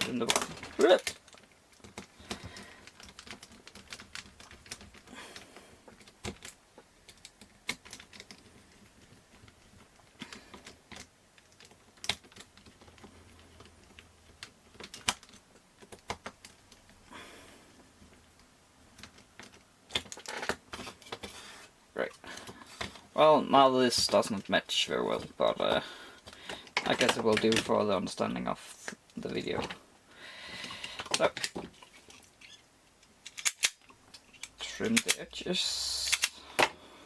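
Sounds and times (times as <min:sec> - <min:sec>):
plastic parts clicking and tapping: 0:00.0 - 0:17.1, 0:17.9 - 0:21.4, 0:22.1 - 0:23.2, 0:23.9 - 0:29.8, 0:30.5 - 0:35.3.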